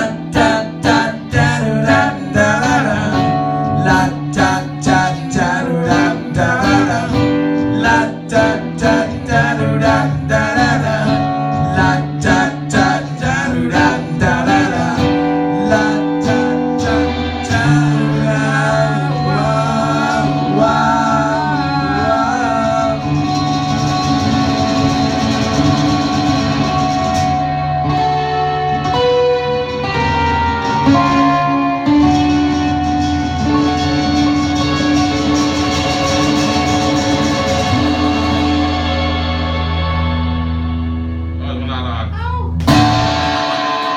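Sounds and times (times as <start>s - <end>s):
person singing: 0.0s - 40.5s
strummed acoustic guitar chords: 0.0s - 43.9s.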